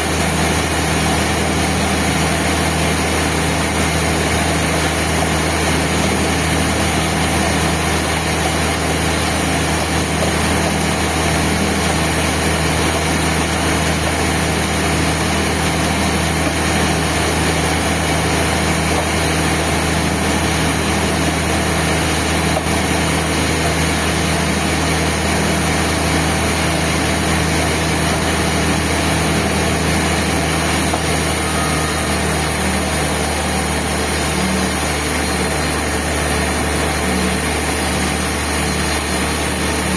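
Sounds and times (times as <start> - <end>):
band sawmill droning: 0.0 - 39.9.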